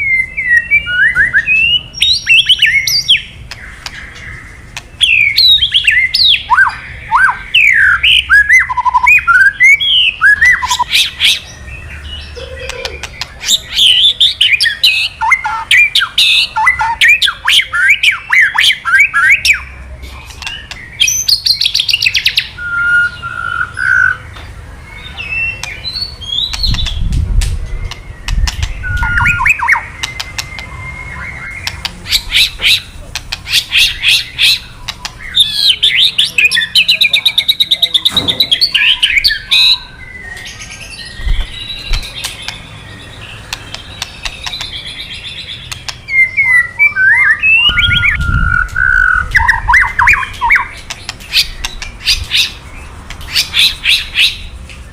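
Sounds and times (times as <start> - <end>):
bird whistles and trills: 0.0 - 54.9
bird crackling calls: 1.1 - 9.2, 12.4 - 19.6, 31.5 - 40.6.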